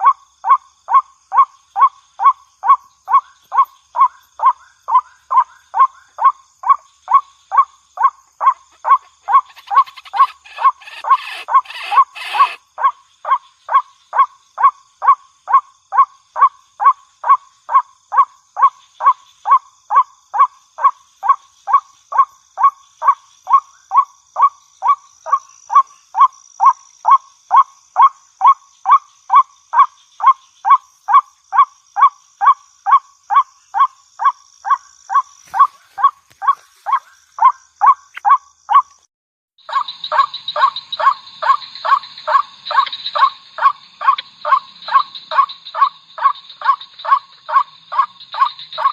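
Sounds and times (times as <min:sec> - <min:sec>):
waterhen calling: 0:08.4 - 0:12.6, 0:35.5 - 0:38.8.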